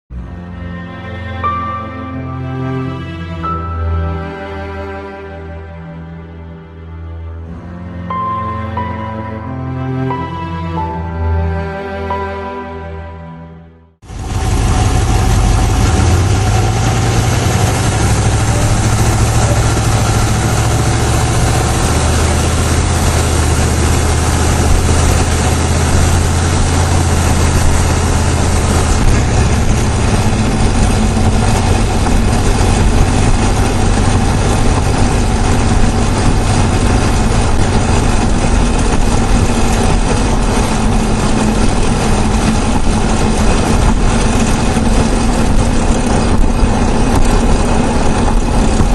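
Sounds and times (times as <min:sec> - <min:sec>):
car engine running with chatter: 0:14.1 - 0:48.9.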